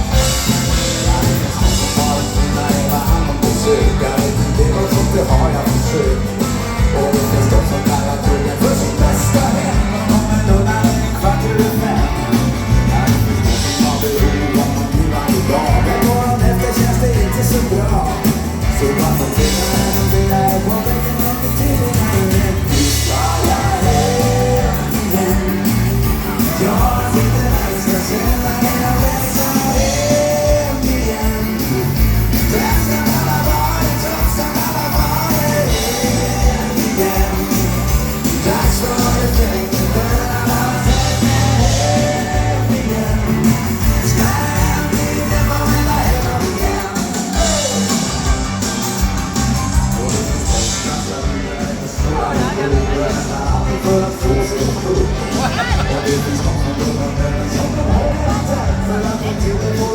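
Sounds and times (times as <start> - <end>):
lead singer singing: 0.0 - 59.9
rock and roll band playing: 0.0 - 59.9.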